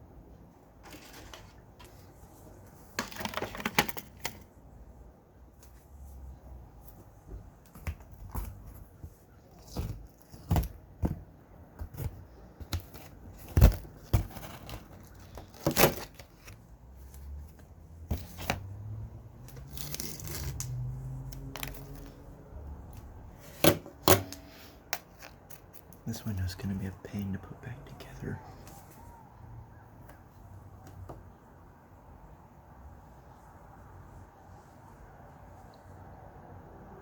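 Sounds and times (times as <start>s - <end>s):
scraping or rustling: 0.8s - 4.5s.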